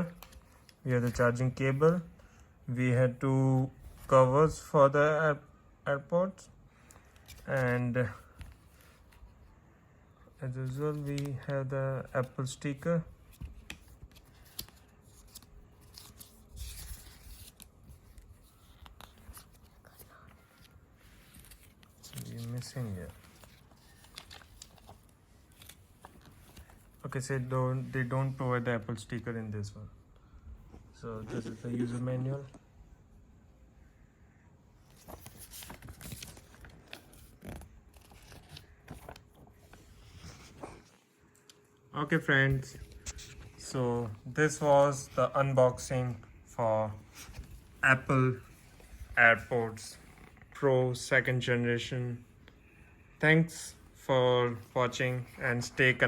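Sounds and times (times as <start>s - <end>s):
paper rustling and crinkling: 0.0s - 2.4s, 6.8s - 9.4s, 10.5s - 28.7s, 34.8s - 41.6s, 42.4s - 46.1s, 46.8s - 50.6s.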